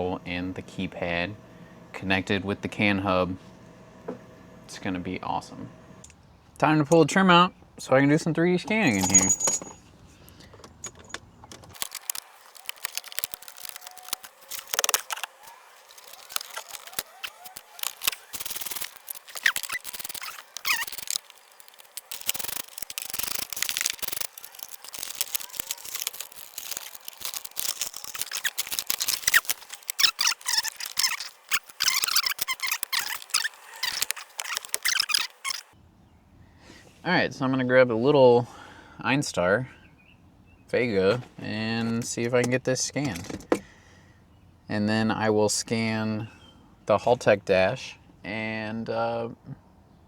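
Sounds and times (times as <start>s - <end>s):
plastic squeaking: 10.5s - 35.8s
plastic trim clips snapping: 11.7s - 35.6s.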